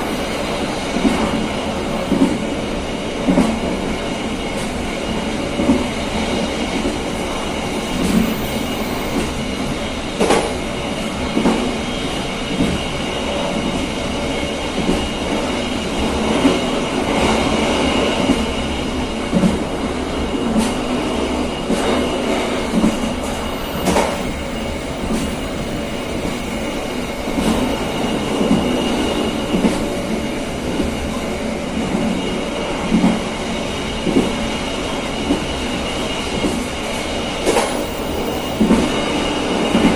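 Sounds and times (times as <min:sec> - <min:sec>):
faint high ringing: 0:00.0 - 0:02.8, 0:05.9 - 0:10.2, 0:21.6 - 0:32.8, 0:37.2 - 0:39.9
train wheels rumbling on rail: 0:00.0 - 0:39.9.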